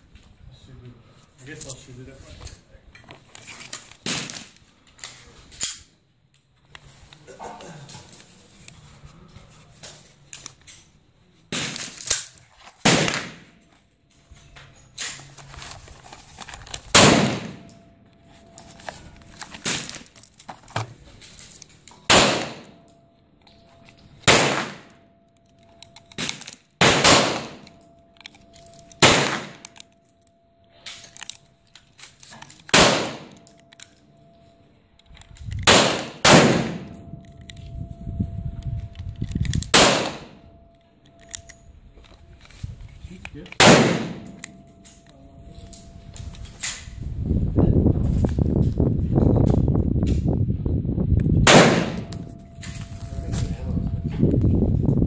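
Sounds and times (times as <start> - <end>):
suppressed pistol shots: 12.8 - 13.5, 16.9 - 17.7, 22.1 - 22.8, 24.3 - 24.9, 26.2 - 27.8, 29.0 - 29.7, 32.7 - 33.4, 35.6 - 37.2, 39.7 - 40.4, 43.6 - 44.6, 51.4 - 52.2.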